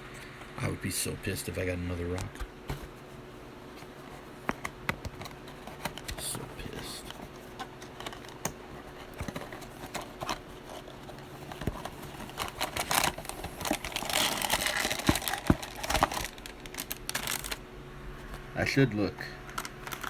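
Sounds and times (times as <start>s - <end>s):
packaging clicks and taps: 4.4s - 17.6s
plastic packaging crinkling: 5.2s - 17.6s, 19.4s - 20.0s.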